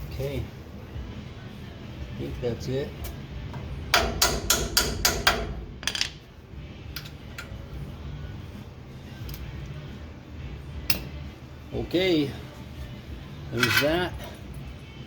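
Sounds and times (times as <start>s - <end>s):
hammer tapping on metal: 3.9s - 6.2s.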